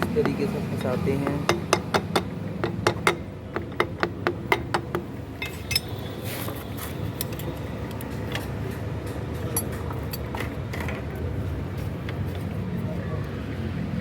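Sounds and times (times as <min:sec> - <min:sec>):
metal clinks: 0:03.1 - 0:06.1.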